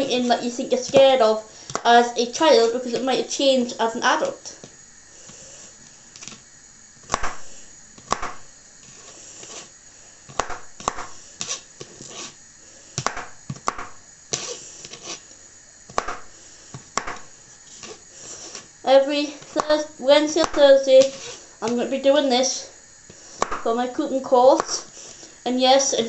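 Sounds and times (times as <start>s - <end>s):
knife chopping on a board: 7.0s - 9.0s, 10.3s - 12.3s, 13.0s - 15.2s, 15.9s - 18.0s, 20.4s - 21.4s, 23.4s - 23.7s, 24.6s - 24.9s.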